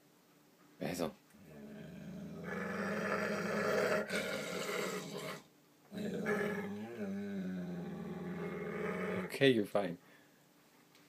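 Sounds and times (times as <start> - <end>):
dog growling: 1.4 - 9.4.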